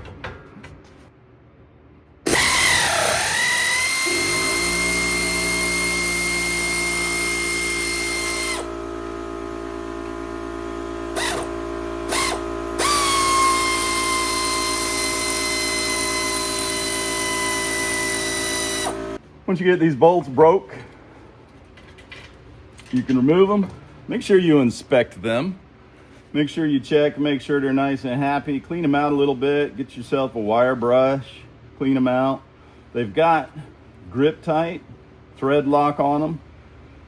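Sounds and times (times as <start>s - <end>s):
electric power tool whining: 2.3s - 19.2s.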